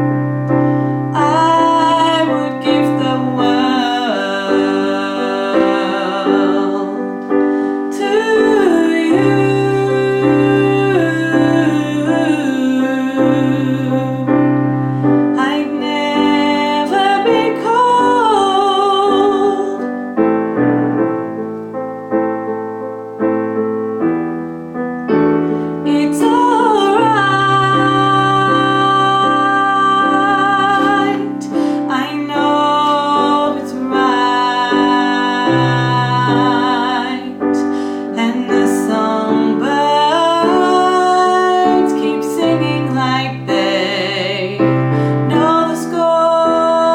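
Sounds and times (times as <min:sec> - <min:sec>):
piano chords: 0:00.0 - 0:46.9
woman singing: 0:01.0 - 0:20.2, 0:25.7 - 0:46.9.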